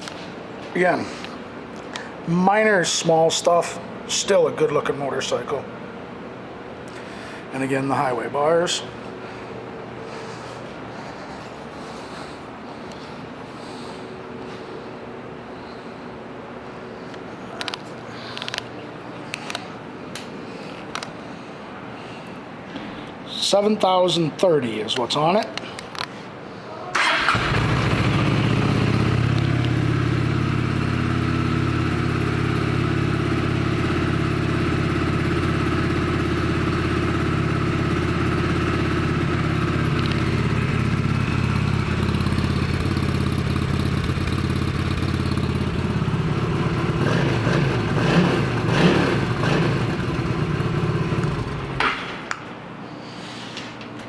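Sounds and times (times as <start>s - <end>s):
motorcycle engine idling and revving: 27.0s - 51.9s.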